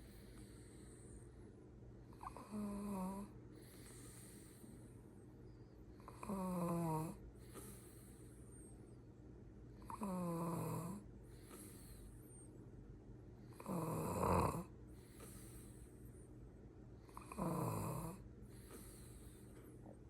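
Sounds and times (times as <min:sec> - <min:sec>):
quiet breathing: 0:00.0 - 0:20.0
person snoring: 0:02.2 - 0:04.2, 0:06.0 - 0:07.7, 0:09.8 - 0:11.0, 0:13.5 - 0:14.7, 0:17.1 - 0:19.2.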